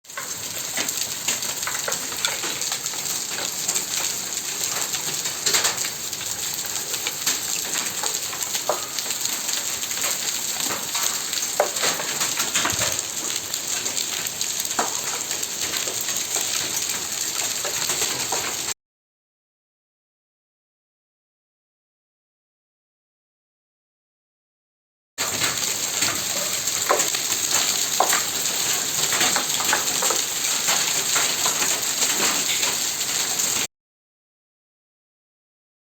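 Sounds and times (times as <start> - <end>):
hailstones ticking and tapping: 0.1 - 18.7, 25.2 - 33.7
rain hissing: 0.1 - 18.8, 25.2 - 33.7.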